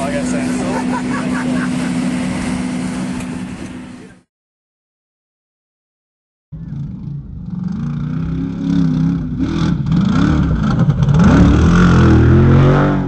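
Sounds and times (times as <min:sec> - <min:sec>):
engine revving: 0:06.6 - 0:13.0.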